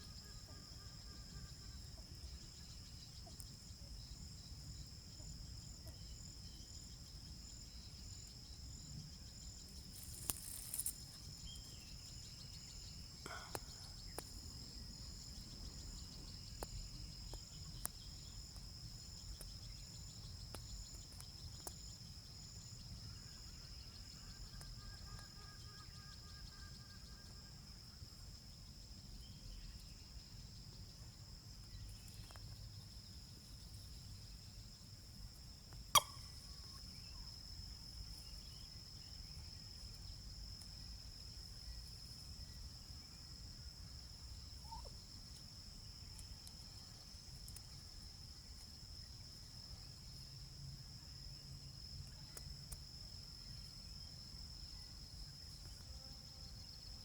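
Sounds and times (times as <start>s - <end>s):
high-pitched insect chorus: 0.0s - 57.0s
faint whistled bird calls: 35.9s - 37.3s, 44.6s - 45.0s
sharp click: 36.0s - 36.2s.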